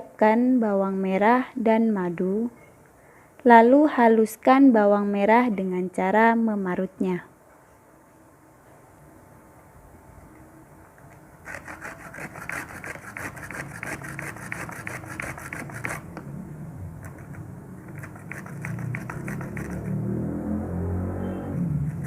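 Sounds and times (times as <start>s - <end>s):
shallots grated on hand grater: 11.5s - 16.0s, 17.9s - 19.8s.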